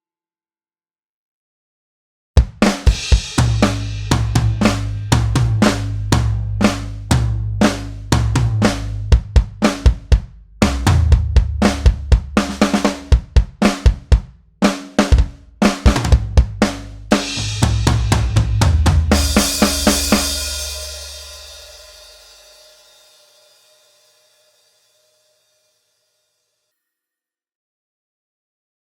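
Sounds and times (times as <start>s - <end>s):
drum kit pattern: 2.4s - 22.8s
cymbal crash ringing out: 19.2s - 25.7s.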